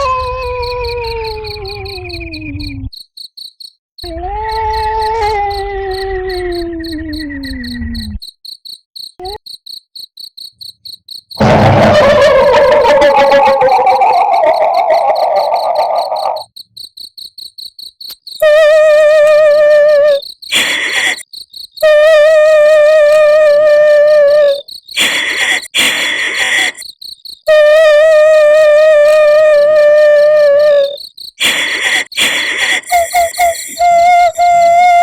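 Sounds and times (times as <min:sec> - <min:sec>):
female ghost wailing: 0:00.0 - 0:02.6, 0:04.0 - 0:07.2, 0:11.4 - 0:16.5, 0:18.4 - 0:21.2, 0:21.8 - 0:26.8, 0:27.5 - 0:35.0
crickets chirping: 0:00.0 - 0:35.0
breathy sobbing gasps: 0:11.4 - 0:16.4, 0:20.5 - 0:21.2, 0:23.9 - 0:26.8, 0:29.0 - 0:35.0.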